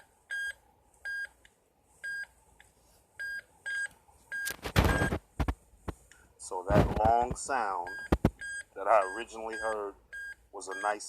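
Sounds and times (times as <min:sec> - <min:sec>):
metal detector beeps: 0:03.2 - 0:05.2, 0:07.9 - 0:11.0.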